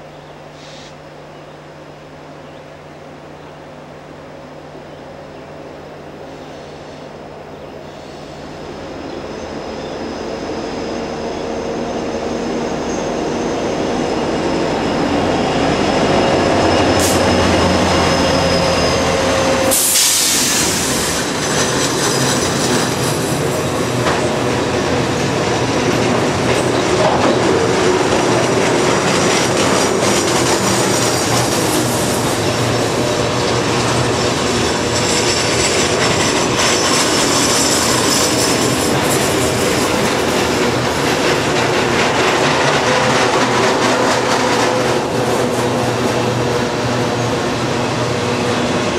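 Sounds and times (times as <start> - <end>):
locomotive engines: 0.0 - 48.9
train wheel squeal: 7.8 - 48.9
train wheels clickety-clack: 15.0 - 48.9.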